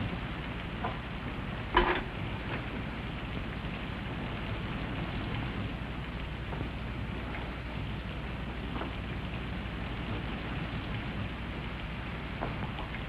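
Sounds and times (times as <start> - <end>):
rain on a roof: 0.0 - 13.0.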